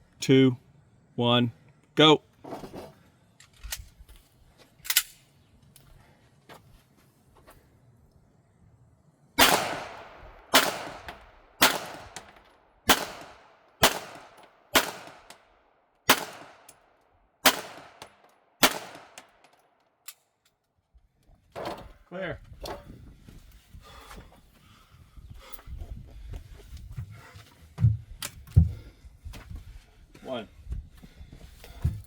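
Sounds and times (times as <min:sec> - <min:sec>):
gunshots: 0:09.4 - 0:15.4, 0:16.1 - 0:16.7, 0:17.4 - 0:19.4.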